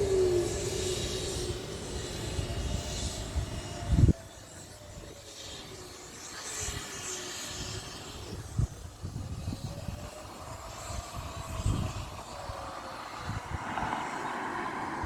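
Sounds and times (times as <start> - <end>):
siren wailing: 0.0 - 4.2.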